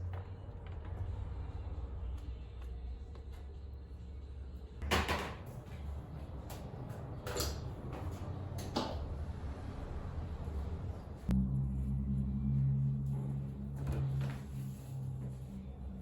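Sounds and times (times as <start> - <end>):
steady low hum: 5.6 - 16.0.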